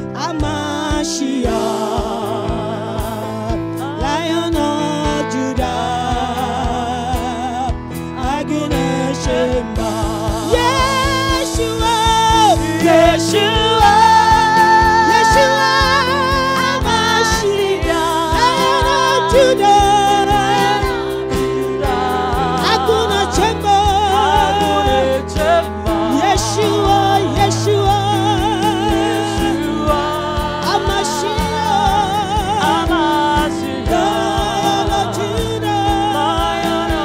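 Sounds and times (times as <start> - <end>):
sustained keyboard chords: 0.0 - 37.0
drum beat: 0.4 - 37.0
voices singing with vibrato: 9.3 - 37.0.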